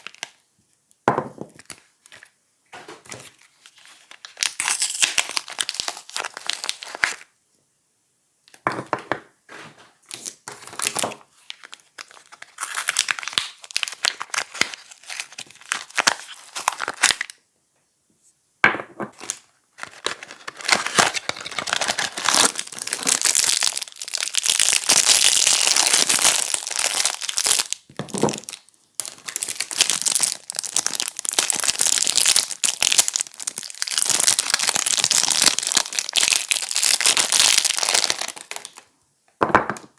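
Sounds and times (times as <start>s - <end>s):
packaging crinkling: 0.0s - 0.4s, 3.1s - 7.3s, 10.1s - 17.4s, 19.1s - 38.9s.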